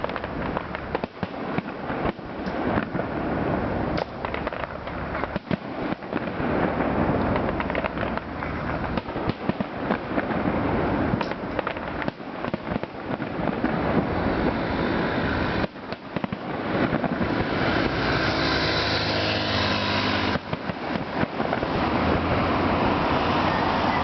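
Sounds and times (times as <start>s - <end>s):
fireworks bangs and crackling: 0.0s - 24.0s.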